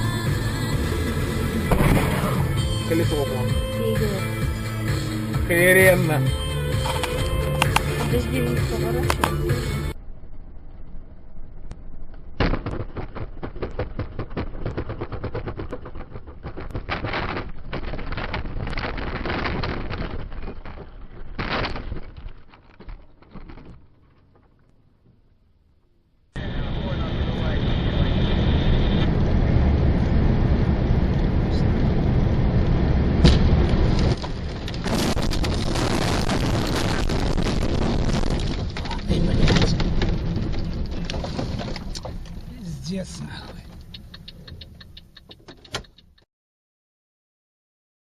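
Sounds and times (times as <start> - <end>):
road rumble: 0.0 - 46.2
truck tyre blowout bang: 0.8 - 2.9, 26.4 - 42.0
rapid irregular clattering: 12.4 - 25.1, 34.2 - 46.2.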